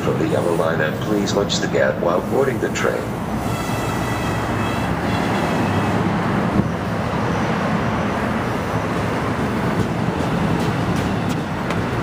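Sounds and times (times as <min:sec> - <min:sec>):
train rumbling: 0:00.0 - 0:12.0
wind buffeting microphone: 0:04.6 - 0:12.0.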